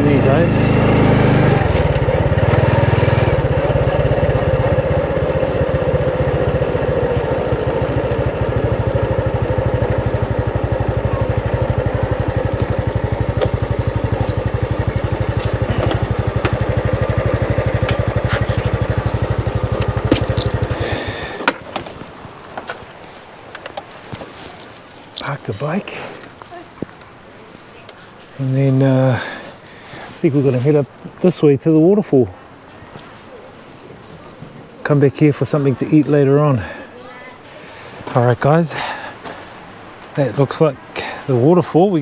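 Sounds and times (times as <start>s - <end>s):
motorbike engine running: 0.0s - 21.6s.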